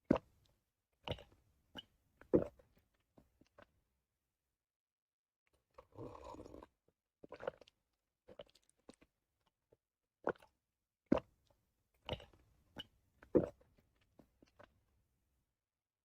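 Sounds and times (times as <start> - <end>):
person gulping water: 0.0 - 0.4, 1.0 - 1.4, 2.2 - 3.7, 5.6 - 9.1, 10.2 - 11.4, 12.0 - 14.7.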